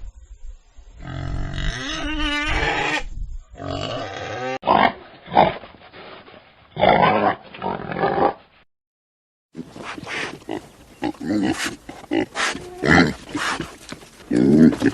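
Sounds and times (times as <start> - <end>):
pigs squealing: 1.1 - 5.5
pigs grunting: 9.6 - 14.9.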